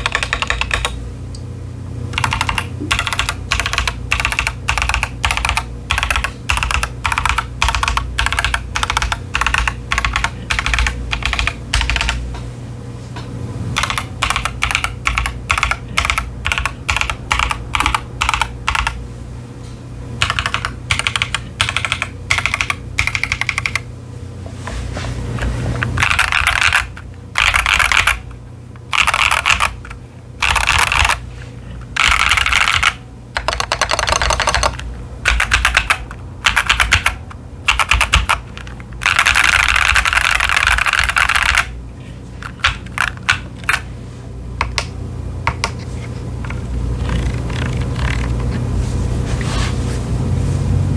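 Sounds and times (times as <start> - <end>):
typing on mechanical keyboard: 0.0 - 1.0, 2.1 - 12.2, 13.8 - 19.0, 20.2 - 23.9, 25.8 - 31.2, 31.8 - 41.8, 42.4 - 43.9, 44.6 - 45.8, 46.4 - 48.5.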